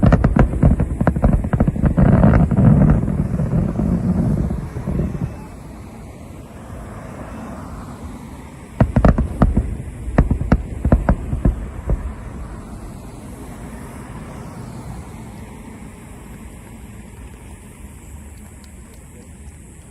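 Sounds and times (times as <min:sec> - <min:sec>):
firework shells bursting: 0:00.0 - 0:06.1, 0:08.6 - 0:14.7
steady low rumble: 0:00.0 - 0:19.9.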